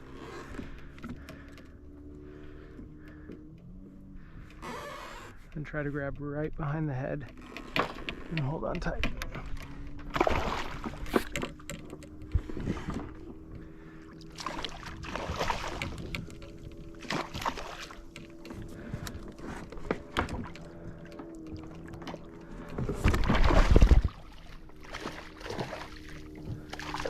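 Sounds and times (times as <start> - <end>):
steady low hum: 0.0 - 27.0
water splashing against kayak: 6.8 - 27.0.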